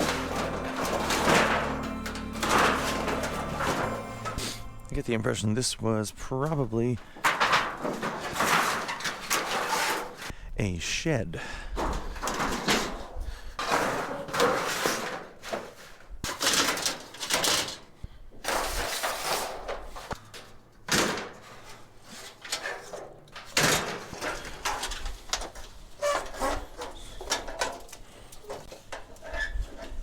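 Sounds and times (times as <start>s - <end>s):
scrap metal clattering: 0.0s - 4.9s, 7.2s - 10.3s.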